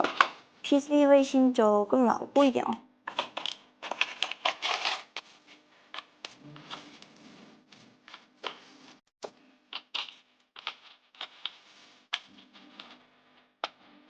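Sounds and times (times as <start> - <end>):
plastic keyboard parts clicking: 3.1 - 5.0.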